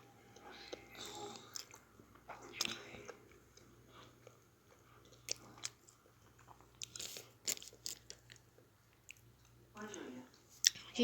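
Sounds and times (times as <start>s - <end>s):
person crunching snack food: 5.0s - 8.4s.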